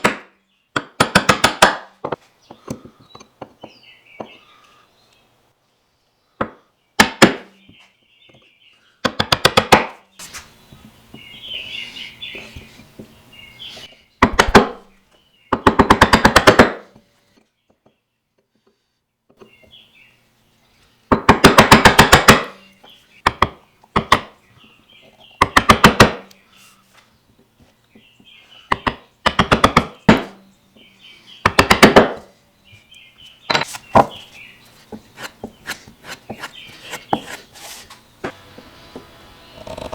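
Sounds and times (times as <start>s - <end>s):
faint bird chirps: 10.1s - 14.2s
hand tool scraping wood: 33.6s - 39.9s.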